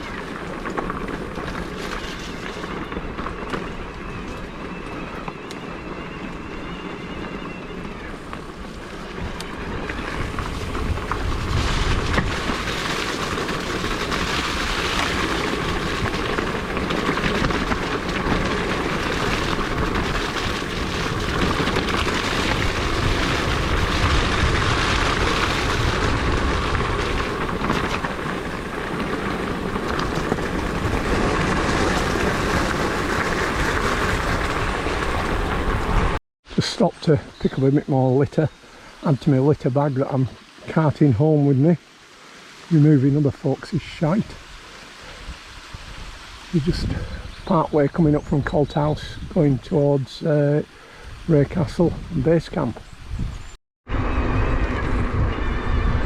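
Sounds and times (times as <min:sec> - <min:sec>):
wind buffeting microphone: 0:00.0 - 0:36.2, 0:42.0 - 0:56.0
tyres rolling on wet track: 0:00.0 - 0:46.9.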